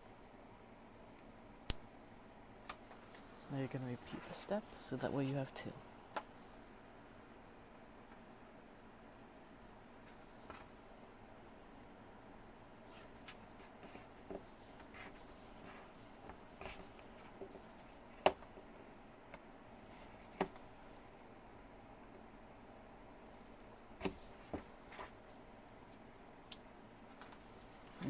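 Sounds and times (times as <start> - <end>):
knife scratching wooden stick: 12.9 - 18.6.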